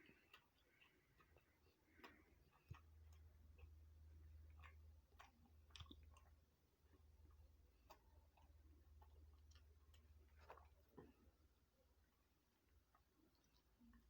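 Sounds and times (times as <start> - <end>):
chewing and wet mouth clicks: 0.0 - 11.6, 12.6 - 14.0.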